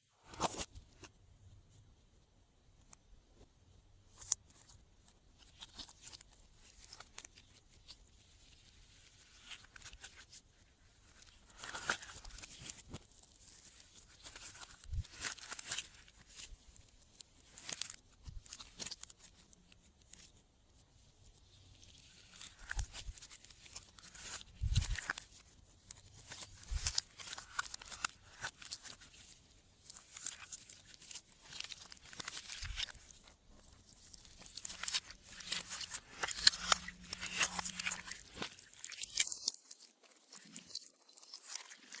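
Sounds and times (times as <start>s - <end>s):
slime squeezed by hand crackling: 34.1s - 42.0s.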